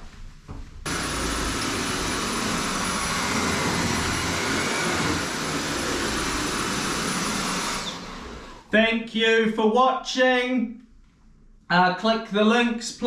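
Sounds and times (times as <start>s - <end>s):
vacuum cleaner running: 0.9s - 8.7s.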